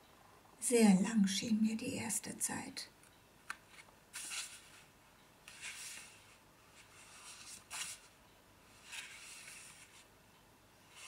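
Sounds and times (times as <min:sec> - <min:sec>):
book pages turning: 0:03.4 - 0:08.2, 0:08.8 - 0:10.1.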